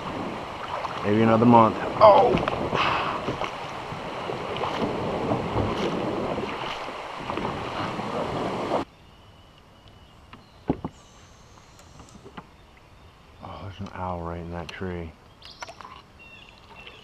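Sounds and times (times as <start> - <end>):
creek water rushing: 0.0 - 8.9.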